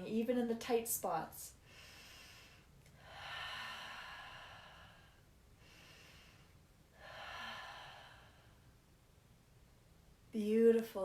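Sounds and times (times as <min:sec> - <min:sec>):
person breathing: 0:01.6 - 0:08.8.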